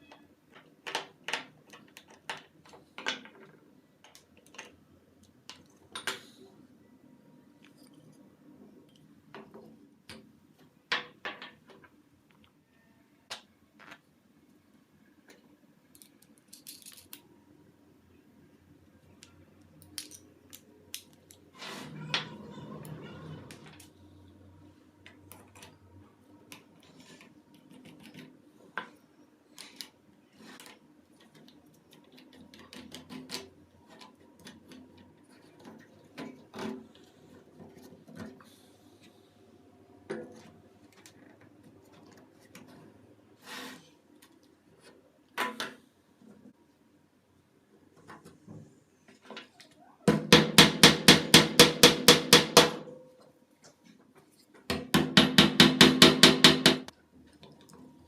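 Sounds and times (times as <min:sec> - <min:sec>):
objects knocking and clicking: 0:00.1 - 0:04.8, 0:09.3 - 0:12.4
metal tools clicking and clinking: 0:16.0 - 0:17.2
rubbing or sliding sound: 0:21.5 - 0:23.6, 0:43.4 - 0:44.0.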